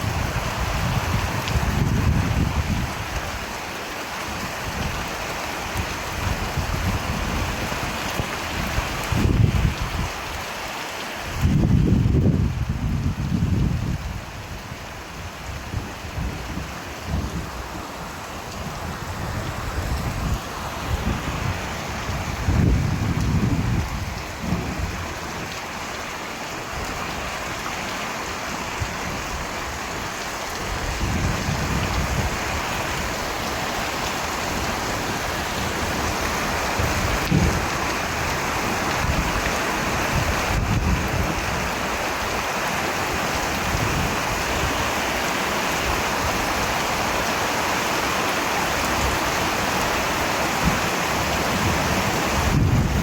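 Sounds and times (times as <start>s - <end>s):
rain falling: 0.0s - 53.0s
thunder rumbling: 36.8s - 38.3s, 51.6s - 53.0s.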